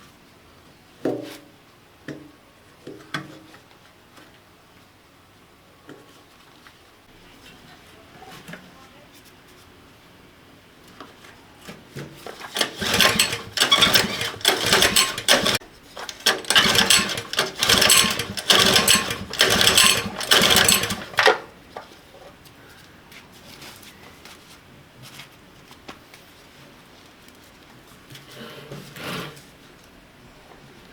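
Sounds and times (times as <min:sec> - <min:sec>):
machine clattering bursts: 0:12.3 - 0:21.5.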